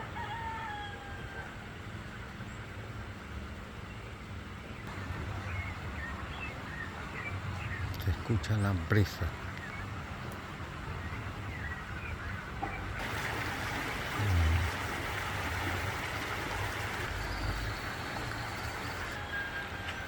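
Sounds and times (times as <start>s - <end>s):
light rain hissing: 13.0s - 19.2s.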